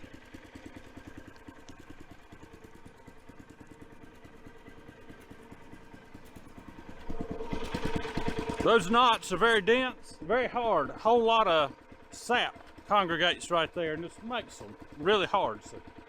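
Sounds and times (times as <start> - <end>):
small gasoline engine idling: 0.0 - 16.0.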